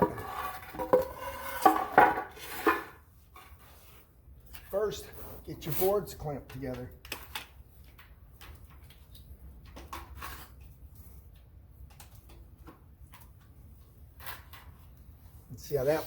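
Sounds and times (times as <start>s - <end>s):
wooden boards knocking: 0.0s - 2.9s.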